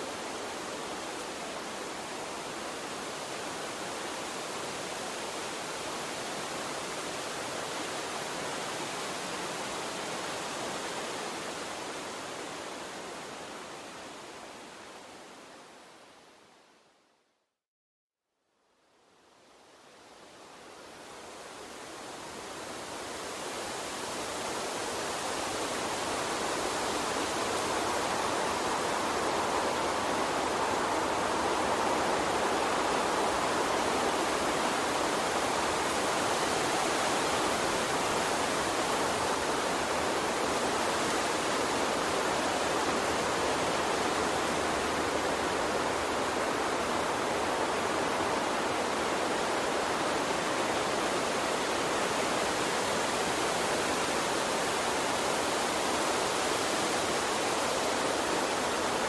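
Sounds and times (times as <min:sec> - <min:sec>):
water stream rushing: 0:20.5 - 0:59.0.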